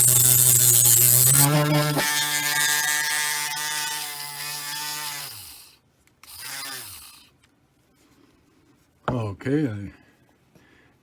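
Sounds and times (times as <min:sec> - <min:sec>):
rotary tool running: 0:00.0 - 0:05.6.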